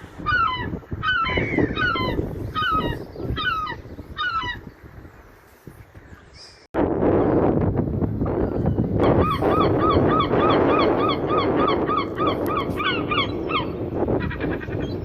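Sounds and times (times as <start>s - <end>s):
gull calling: 0.2s - 4.6s, 9.0s - 15.0s.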